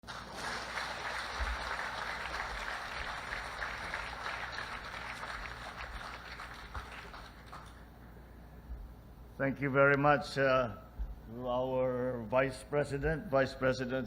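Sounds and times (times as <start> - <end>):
crowd applauding: 0.0 - 7.9.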